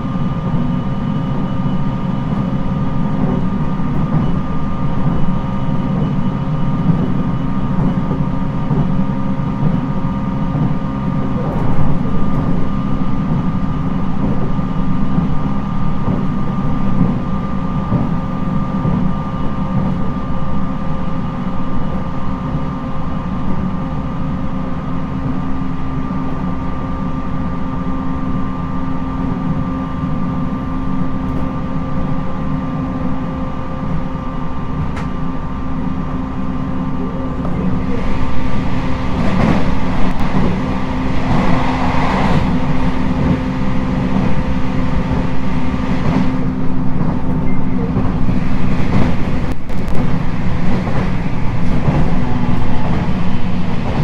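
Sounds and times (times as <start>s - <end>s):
wheel-on-rail rumble: 0.0s - 54.0s
jet-like whine: 37.0s - 54.0s.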